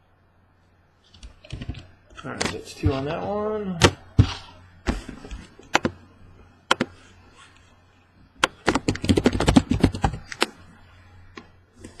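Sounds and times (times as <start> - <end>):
hard clicks and taps: 5.6 - 6.0, 6.7 - 7.0, 8.4 - 10.6.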